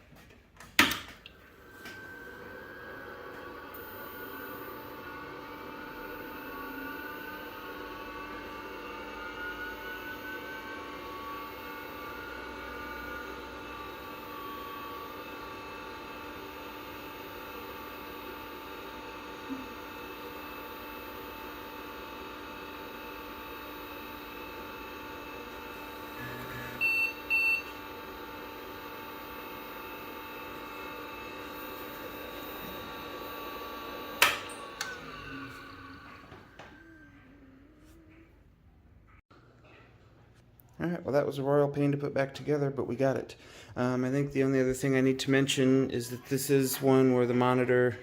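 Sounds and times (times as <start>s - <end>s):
whining tones: 1.3s - 39.2s.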